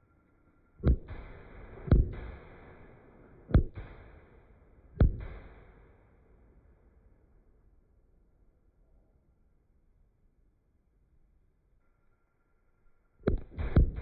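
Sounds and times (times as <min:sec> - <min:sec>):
firework bursts with low rumble: 0:00.8 - 0:06.0, 0:13.3 - 0:14.0.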